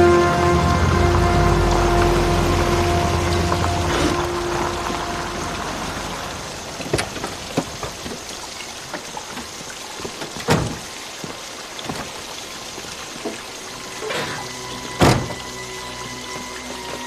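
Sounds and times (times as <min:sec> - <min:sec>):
rain hissing: 0:00.0 - 0:17.0
short knocks and drips: 0:06.8 - 0:15.4.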